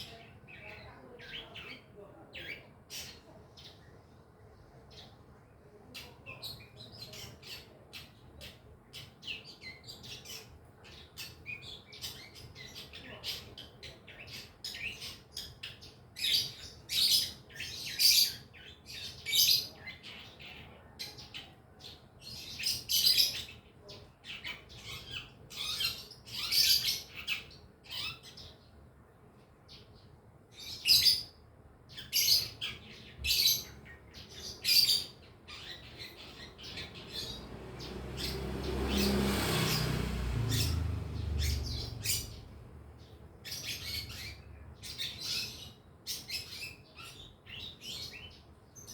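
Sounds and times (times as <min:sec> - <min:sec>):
bird twittering calls: 0:05.9 - 0:28.8, 0:29.7 - 0:48.9.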